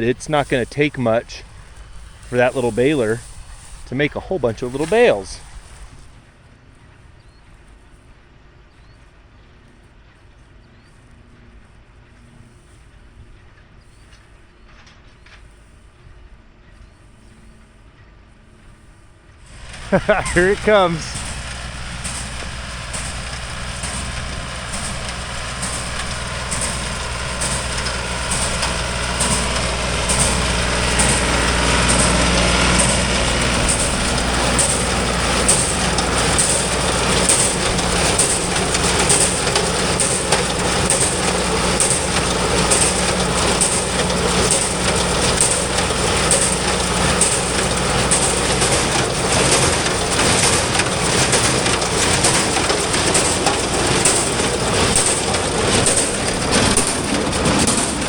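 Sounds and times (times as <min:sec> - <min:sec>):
baler rhythmic clatter: 0:00.0 - 0:06.1, 0:19.5 - 0:58.0
tractor engine running: 0:00.0 - 0:06.2, 0:19.4 - 0:58.0.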